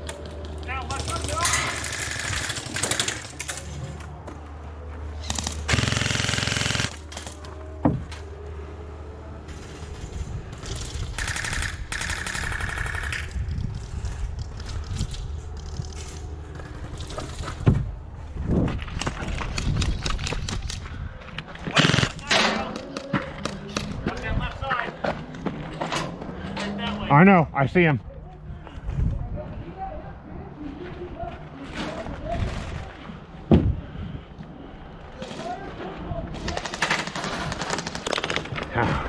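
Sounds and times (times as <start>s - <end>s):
airsoft guns firing bursts: 5.2s - 7.4s, 11.2s - 13.2s, 21.7s - 22.3s, 36.4s - 38.5s.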